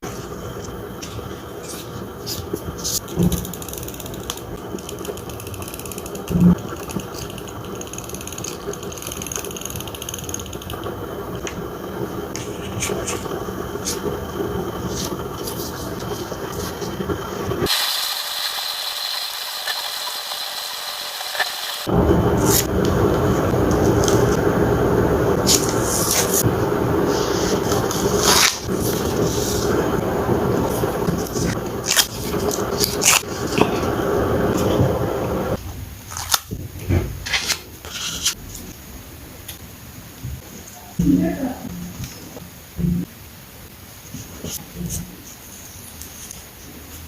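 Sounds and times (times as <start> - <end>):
steady hiss: 5.9 - 36.0.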